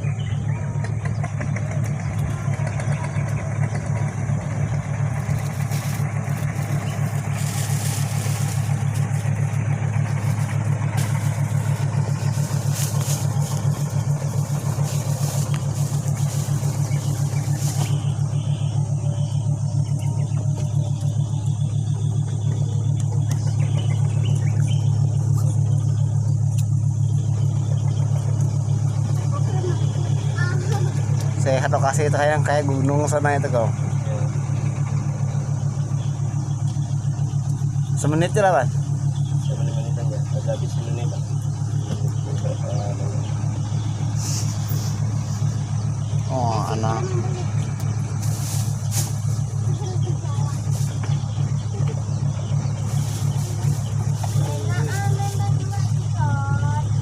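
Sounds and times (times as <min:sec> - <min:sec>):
large engine droning: 0:00.0 - 0:57.0
hiss: 0:44.0 - 0:45.7, 0:48.1 - 0:49.6, 0:52.8 - 0:55.3.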